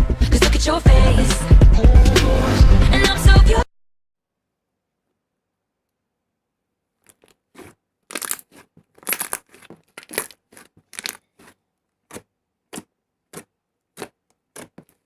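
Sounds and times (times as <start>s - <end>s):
slime crackling: 7.1s - 15.0s.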